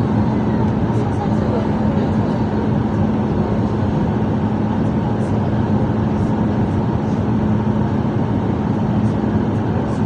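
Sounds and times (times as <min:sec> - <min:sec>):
airliner cabin engine drone: 0:00.0 - 0:10.0.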